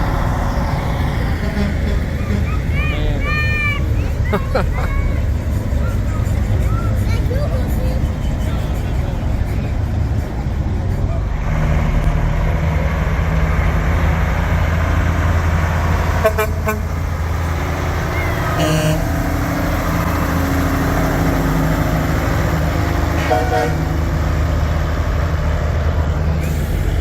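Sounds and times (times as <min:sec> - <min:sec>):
heavy truck engine: 0:00.0 - 0:27.0
truck horn toots: 0:01.3 - 0:02.8, 0:16.1 - 0:17.2, 0:18.0 - 0:19.5, 0:23.2 - 0:24.0.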